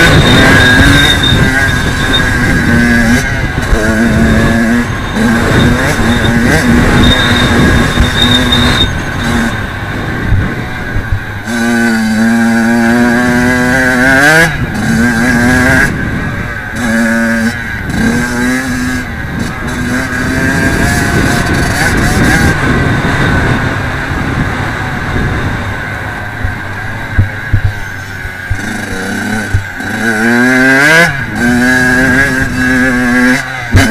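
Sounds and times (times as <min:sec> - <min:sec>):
wind rush: 0:00.0 - 0:33.2
two-stroke motocross engine revving: 0:00.0 - 0:33.9.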